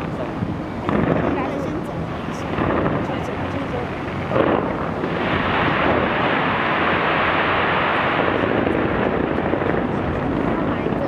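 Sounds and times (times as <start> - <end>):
fireworks barrage: 4.2 - 10.0.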